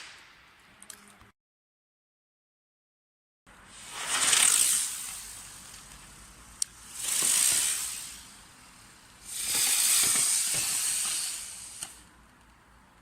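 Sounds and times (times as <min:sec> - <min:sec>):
sharp pop: 0:00.0 - 0:00.5
firework hissing sparks: 0:03.6 - 0:12.2.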